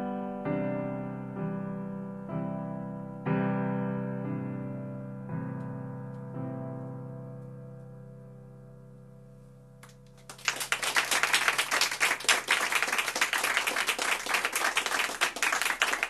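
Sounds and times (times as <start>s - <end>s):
audience applause: 10.2s - 16.0s.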